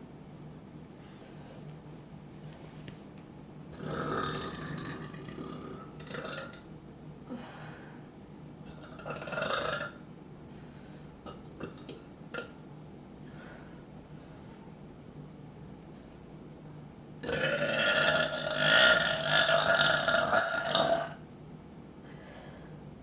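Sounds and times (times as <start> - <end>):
woman burping: 17.2 - 21.2.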